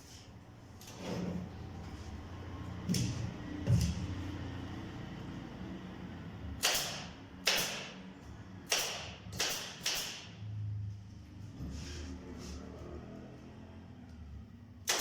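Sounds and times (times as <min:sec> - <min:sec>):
nail gun shots into wood: 0:06.6 - 0:08.0, 0:08.7 - 0:10.3.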